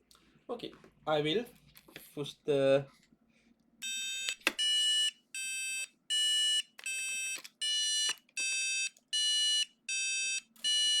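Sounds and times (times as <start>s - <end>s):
buzzer beeping siren pattern: 3.8s - 11.0s.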